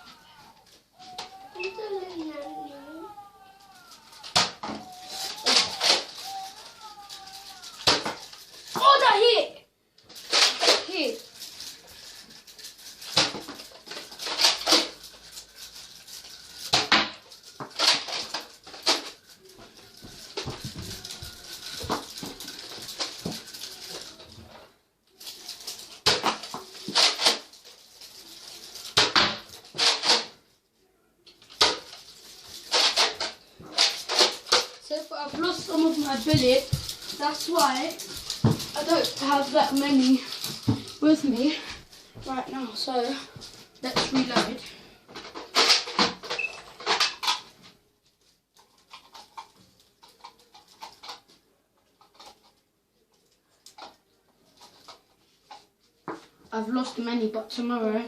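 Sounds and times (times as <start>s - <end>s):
plastic handling noise: 0.0s - 9.2s, 10.0s - 30.4s, 31.2s - 56.4s
rustle and clatter: 10.0s - 30.4s, 31.3s - 57.2s.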